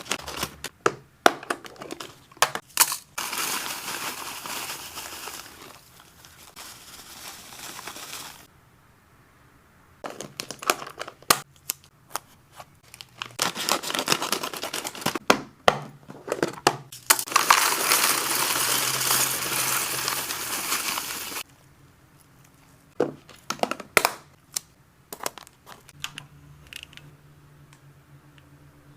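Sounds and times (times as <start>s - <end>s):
plastic packaging crinkling: 0.0s - 0.7s, 1.9s - 8.5s, 10.0s - 11.9s, 12.8s - 15.2s, 17.0s - 21.5s.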